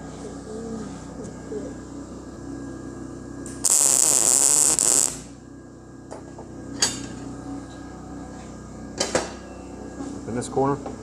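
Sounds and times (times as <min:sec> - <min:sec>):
welding arc hissing crackle: 0:03.6 - 0:05.3.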